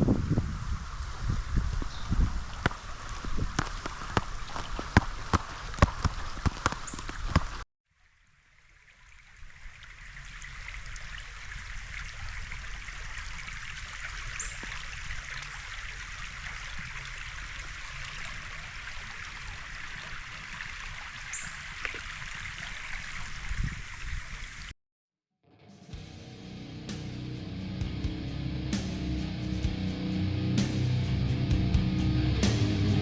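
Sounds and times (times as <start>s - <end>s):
running water rushing: 0.0s - 24.7s.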